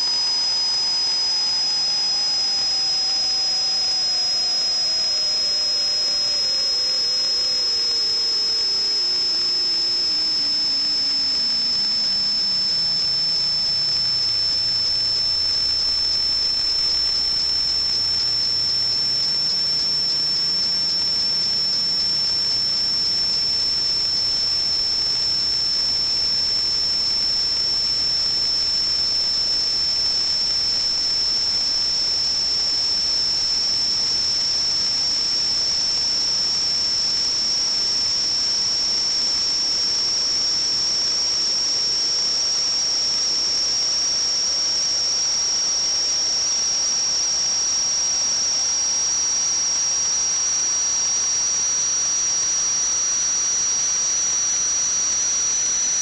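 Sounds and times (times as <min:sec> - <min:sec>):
high-pitched whistle: 0:00.0 - 0:40.0.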